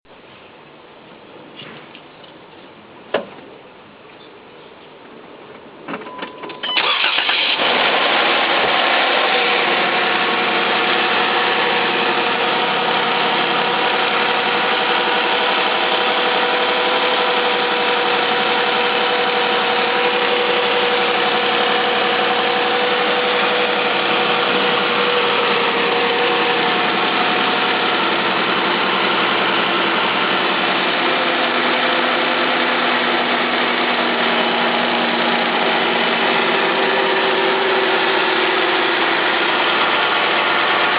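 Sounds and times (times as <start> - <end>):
car engine idling: 6.8 - 40.9.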